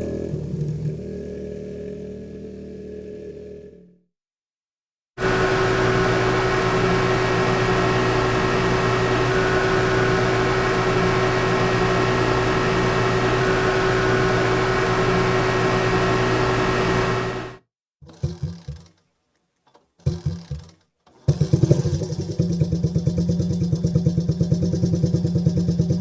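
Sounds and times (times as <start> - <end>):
motorcycle engine running: 5.2 - 19.0, 20.0 - 26.0.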